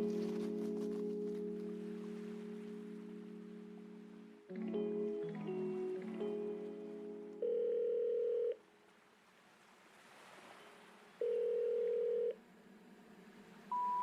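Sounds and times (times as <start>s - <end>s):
telephone ringing tone beeps: 7.4s - 8.6s, 11.2s - 12.4s, 13.7s - 14.0s.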